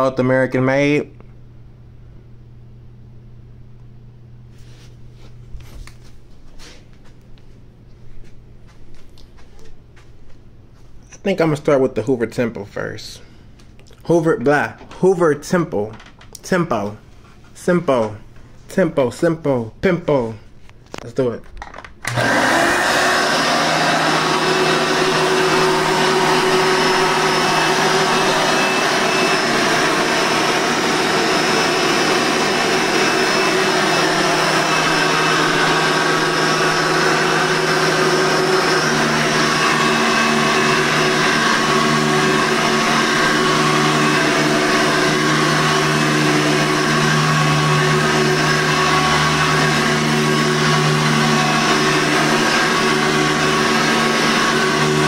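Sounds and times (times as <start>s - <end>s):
vacuum cleaner motor whining: 22.0s - 55.0s.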